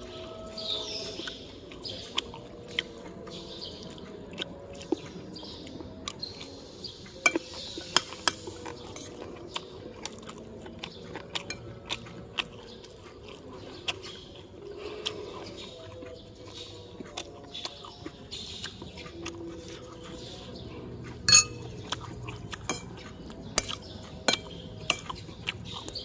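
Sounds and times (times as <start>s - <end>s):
person chewing: 1.2s - 26.0s
cutlery clinking on dishes: 7.2s - 9.2s, 11.4s - 11.8s, 21.3s - 21.8s, 22.6s - 25.2s.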